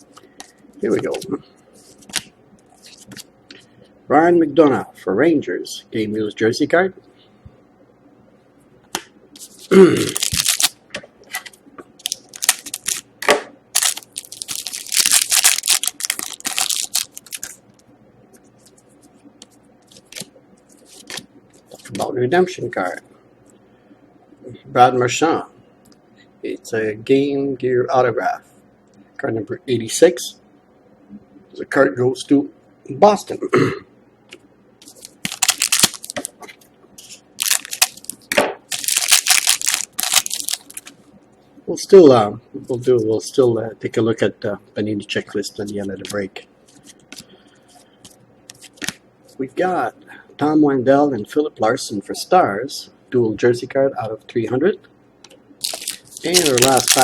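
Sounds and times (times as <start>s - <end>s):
foil wrapper crinkling: 9.4s - 10.8s, 12.0s - 13.1s, 13.7s - 17.6s, 34.8s - 36.4s, 37.0s - 41.0s, 55.6s - 57.0s.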